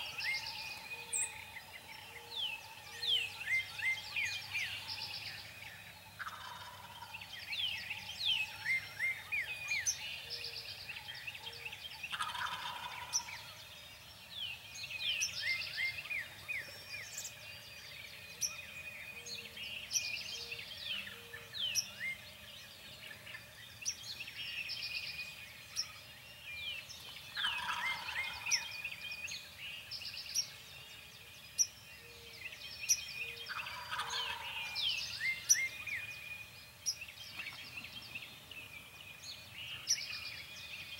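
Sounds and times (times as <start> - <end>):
songbirds chirping: 0.0 - 40.9
turkey gobbling: 6.2 - 7.1, 12.1 - 13.2, 27.4 - 28.4, 33.5 - 34.6.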